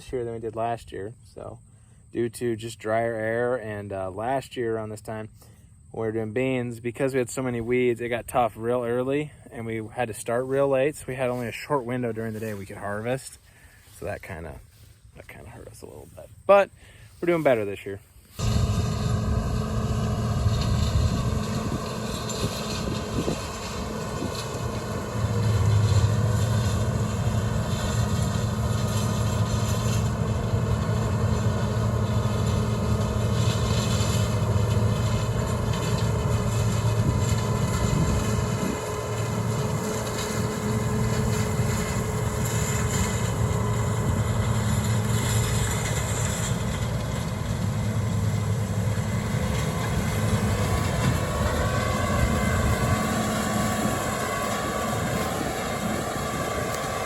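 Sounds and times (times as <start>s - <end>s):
combine harvester engine drone: 0.0s - 57.0s.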